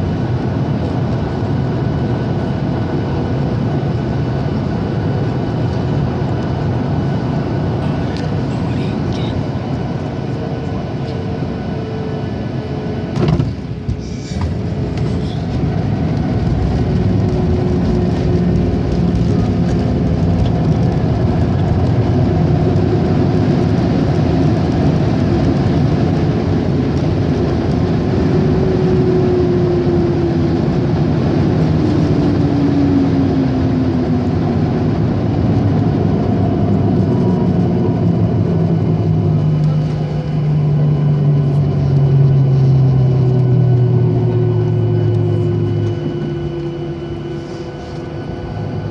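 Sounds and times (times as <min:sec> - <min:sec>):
aircraft cabin rumble: 0:00.0 - 0:48.9
faint falling whine: 0:37.9 - 0:48.9.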